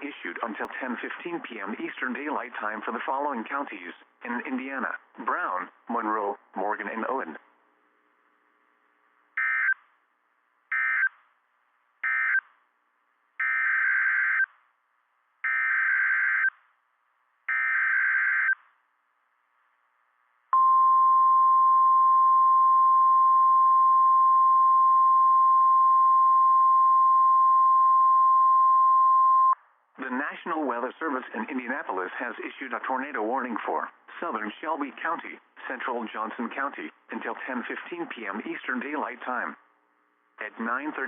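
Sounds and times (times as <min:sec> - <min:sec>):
steady alarm tone: 0:13.4 - 0:14.5, 0:15.4 - 0:16.5, 0:17.5 - 0:18.6.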